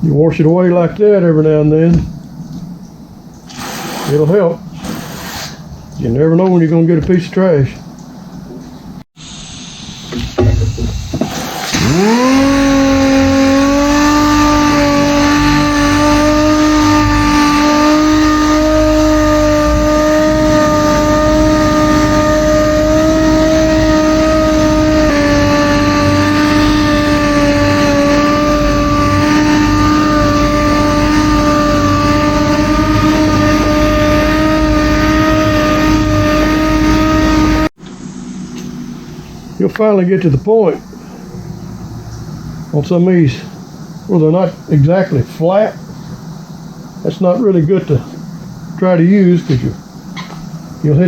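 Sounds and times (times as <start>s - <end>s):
orbital sander running: 10.4s - 37.7s.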